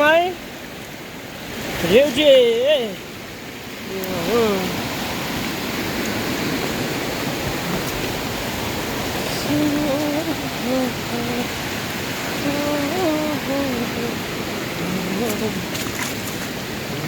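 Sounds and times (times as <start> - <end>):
small stream rushing: 0.0 - 17.0
person singing: 9.2 - 11.6, 12.3 - 15.8.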